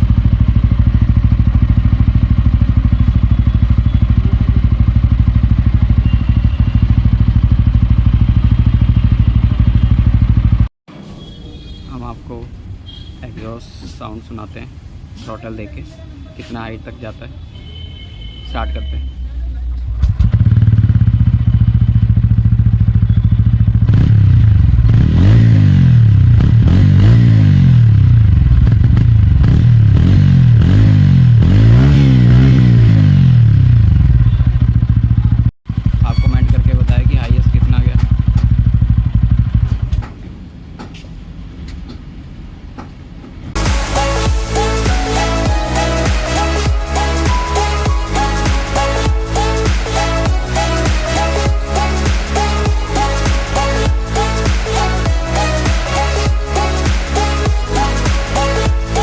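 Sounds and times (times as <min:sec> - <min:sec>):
motorcycle engine idling: 0:00.0 - 0:10.7, 0:19.9 - 0:25.2, 0:33.5 - 0:40.0
motorcycle engine revving: 0:00.0 - 0:10.7, 0:20.0 - 0:40.0, 0:43.6 - 0:59.0.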